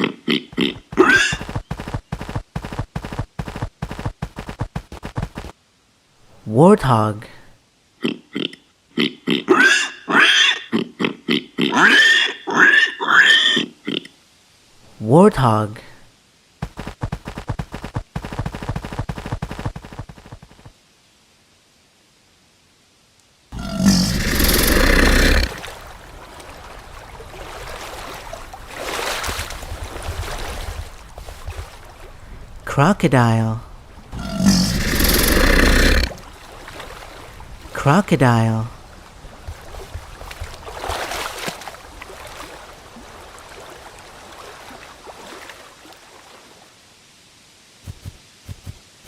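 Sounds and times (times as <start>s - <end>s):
warthog grunting and squealing: 23.6s - 25.7s, 34.1s - 36.2s
faint noisy rustle: 24.1s - 32.7s, 38.7s - 49.0s.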